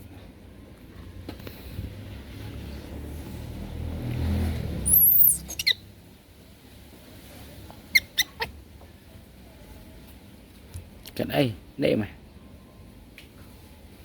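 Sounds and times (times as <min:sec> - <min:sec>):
baby monkey squeaking: 0:04.8 - 0:05.9, 0:07.9 - 0:08.6.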